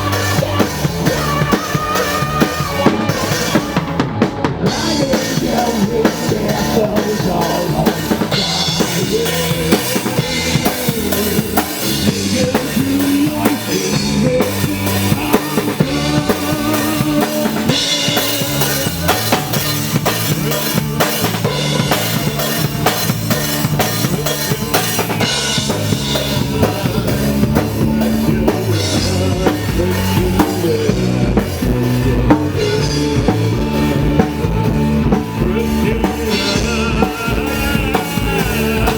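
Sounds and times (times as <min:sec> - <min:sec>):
rock band playing live: 0:00.0 - 0:38.9.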